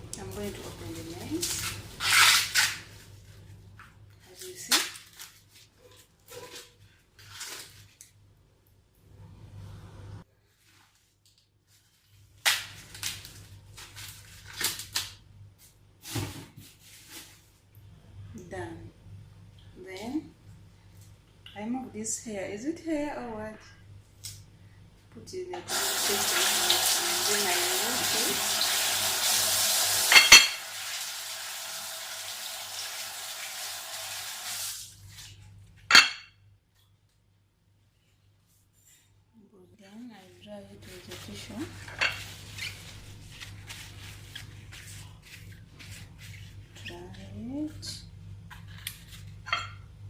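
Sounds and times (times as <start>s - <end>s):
tap running water: 25.7s - 34.9s.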